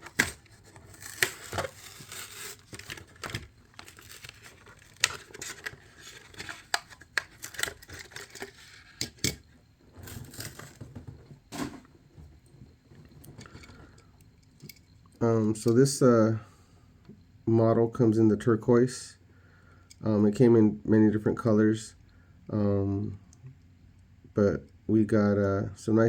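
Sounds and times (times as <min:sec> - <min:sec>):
blister pack being torn open: 0:00.0 - 0:09.1.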